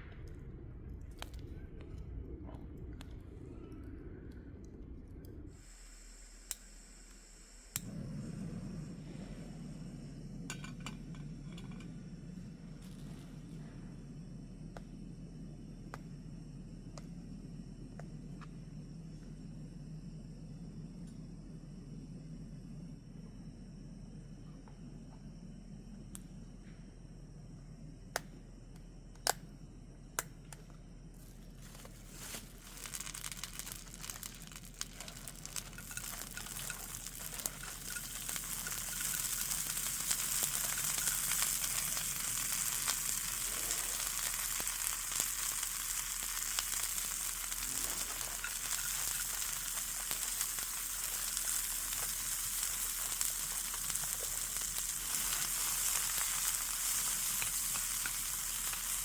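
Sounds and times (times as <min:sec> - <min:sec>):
food sizzling in a pan: 0:05.5 - 0:07.9, 0:31.3 - 0:59.0.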